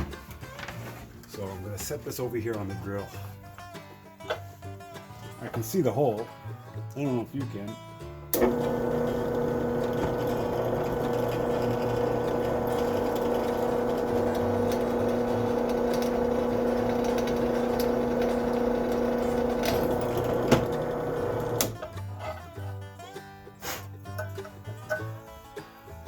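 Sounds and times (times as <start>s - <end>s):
drill press motor hum: 8.3s - 21.8s.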